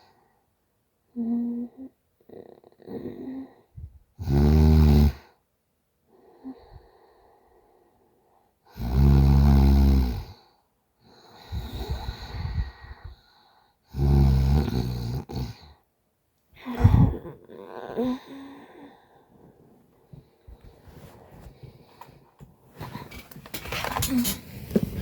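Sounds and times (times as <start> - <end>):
woman snoring: 1.1 - 5.3, 8.7 - 10.4, 11.2 - 13.2, 13.9 - 15.8, 16.6 - 19.3, 24.0 - 25.0
noisy breath out: 6.1 - 8.6, 10.4 - 13.8.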